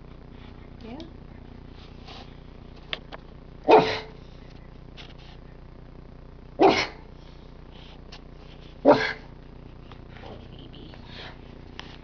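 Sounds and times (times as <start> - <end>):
dog coughing: 3.7 - 4.2, 6.6 - 7.1, 8.8 - 9.3.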